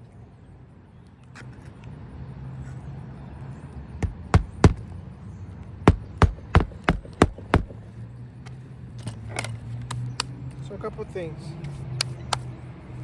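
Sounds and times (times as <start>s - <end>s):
hammer striking nails: 4.0s - 4.9s, 5.9s - 7.9s.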